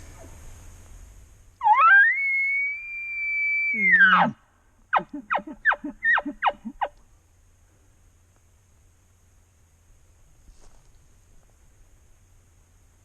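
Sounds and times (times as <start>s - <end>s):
elk bugling: 1.6s - 6.9s.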